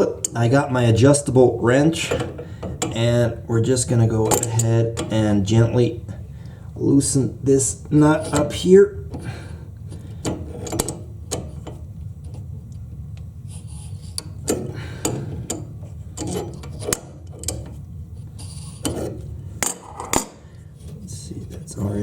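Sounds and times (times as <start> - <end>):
wrench clicking and scraping on nut: 14.0 - 17.8.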